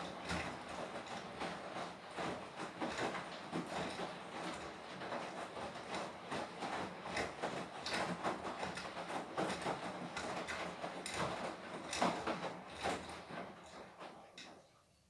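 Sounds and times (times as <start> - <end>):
washing machine drum tumbling laundry: 0.0 - 14.6.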